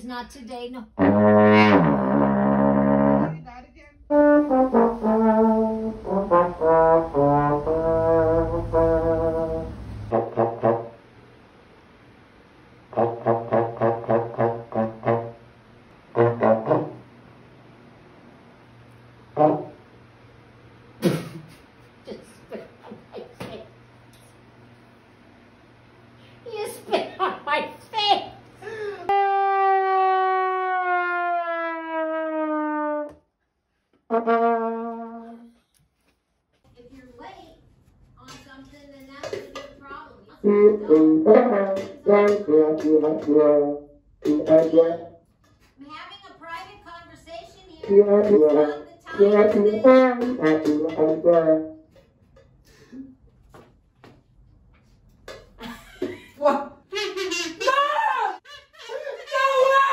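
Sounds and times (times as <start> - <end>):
brass note sliding down: 1.0 - 3.4, 4.1 - 11.0, 29.1 - 33.2
lower brass note: 1.0 - 3.4, 4.1 - 11.0, 29.1 - 33.2
trombone playing comic phrase: 1.0 - 11.0, 29.1 - 33.1, 40.4 - 45.1, 47.9 - 51.8.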